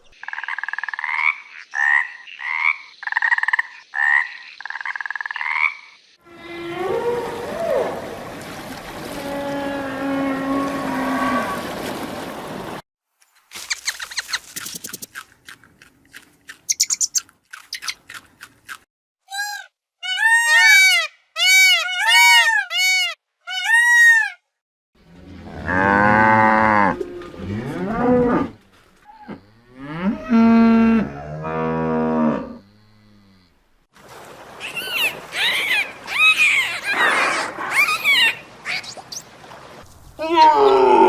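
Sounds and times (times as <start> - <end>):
cattle mooing: 25.2 - 33.5.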